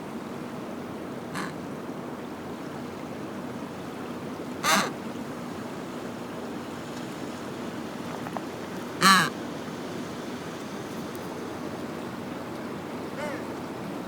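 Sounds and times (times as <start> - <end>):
penguin call: 1.4 - 1.6, 4.6 - 4.9, 9.0 - 9.3.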